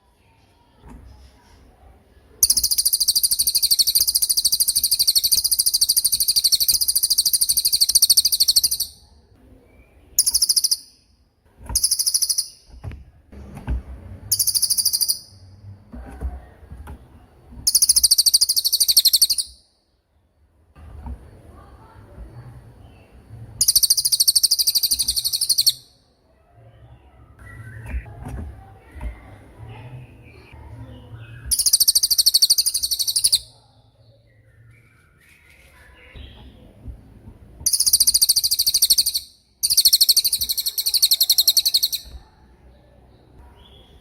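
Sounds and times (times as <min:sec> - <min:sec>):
bird singing high fast trills: 0:02.4 - 0:09.0, 0:10.2 - 0:11.0, 0:11.8 - 0:12.7, 0:14.3 - 0:15.4, 0:17.7 - 0:19.6, 0:23.6 - 0:25.9, 0:31.5 - 0:33.5, 0:37.7 - 0:42.1.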